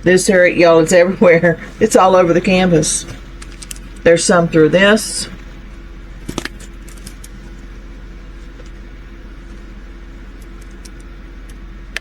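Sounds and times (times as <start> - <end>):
low background hum: 0.0 - 12.0
light clicks: 10.3 - 12.0.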